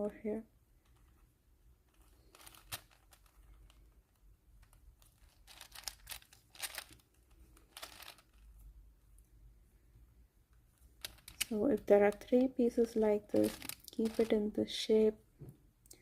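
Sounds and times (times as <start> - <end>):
puzzle cube turning clicks: 4.6 - 8.5, 11.0 - 11.5.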